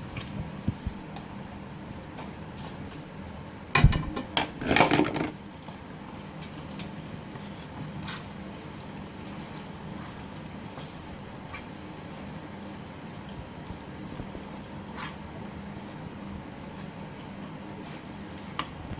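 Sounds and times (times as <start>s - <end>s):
steady low hum: 0.0s - 18.9s
pots and utensils clattering: 3.7s - 5.5s.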